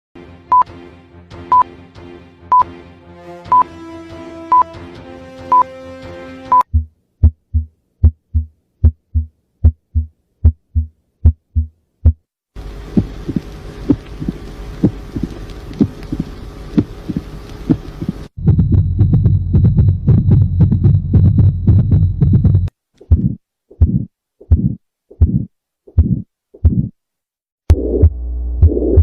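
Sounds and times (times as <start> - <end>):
held musical tones: 2.5 - 6.7
sharp high beep: 4.5 - 4.7
heartbeat thumps: 6.6 - 12.3, 12.9 - 27.0, 27.7 - 29.0
steady hum and hiss: 12.6 - 18.3.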